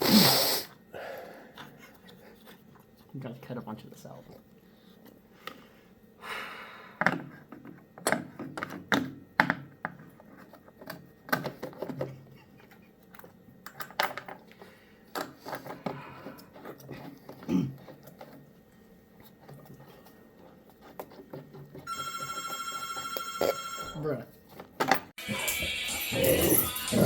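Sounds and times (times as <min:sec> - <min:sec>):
tools being handled and set down: 0:24.5 - 0:25.1.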